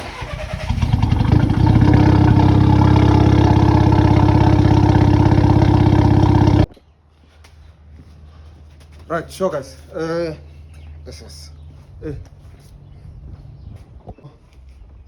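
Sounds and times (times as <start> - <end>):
car engine idling: 0.0 - 6.7.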